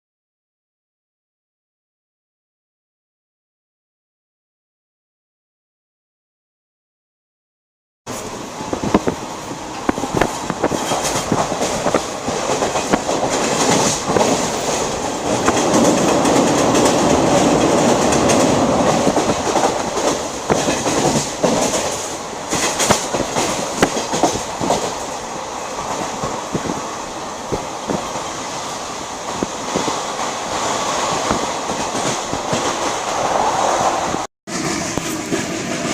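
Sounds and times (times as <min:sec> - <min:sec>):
train rumble: 0:08.1 - 0:35.9
train wheels clicking over rail joints: 0:08.1 - 0:35.9.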